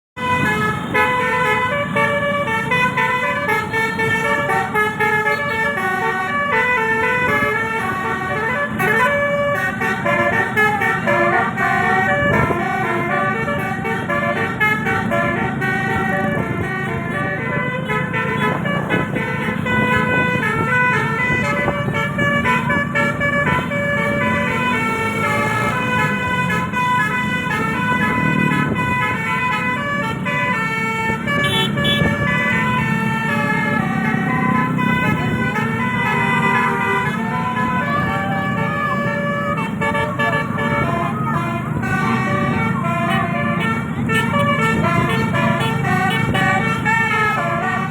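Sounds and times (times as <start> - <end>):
air horns playing a melody: 0.2 - 47.9.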